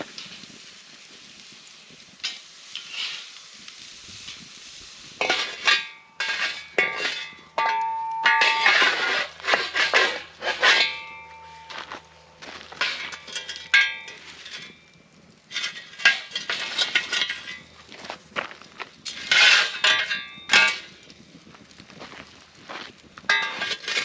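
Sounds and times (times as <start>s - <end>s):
metal cookware clinking and scraping: 5.2s - 14.8s, 15.5s - 17.7s, 19.1s - 20.9s, 23.3s - 24.0s
sharp metallic clanks: 5.2s - 14.9s, 19.1s - 20.9s, 23.3s - 24.0s.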